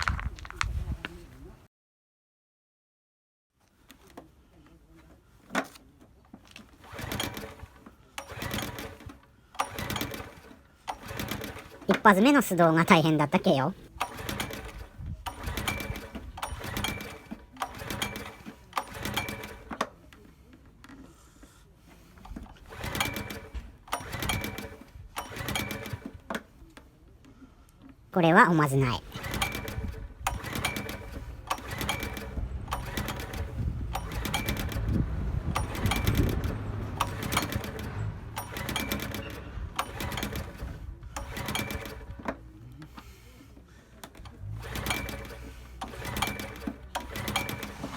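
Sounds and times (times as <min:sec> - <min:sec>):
small generator engine running: 0:06.8 - 0:19.8, 0:22.0 - 0:26.2, 0:28.2 - 0:47.9.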